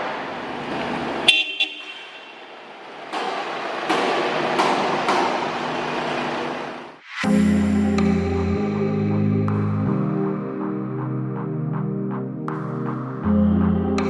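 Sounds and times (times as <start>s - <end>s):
workshop clatter: 0.0s - 6.9s
sharp knocks: 3.1s - 6.2s.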